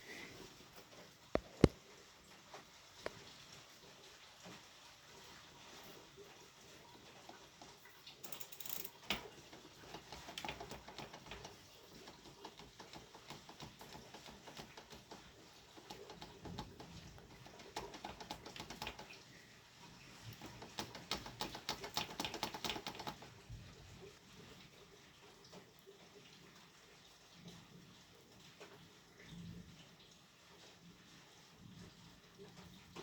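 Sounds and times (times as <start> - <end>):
metal bicycle parts clicking: 8.2 - 9.4.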